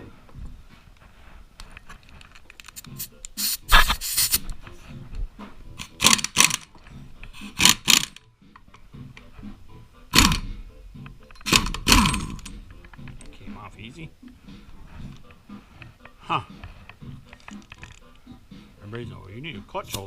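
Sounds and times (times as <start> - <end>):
impact wrench bursts: 5.8 - 6.6, 7.4 - 8.2.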